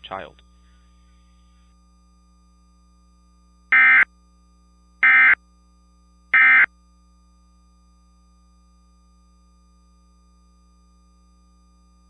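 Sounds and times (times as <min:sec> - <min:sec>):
buzzy digital squawks: 0:06.4 - 0:06.7.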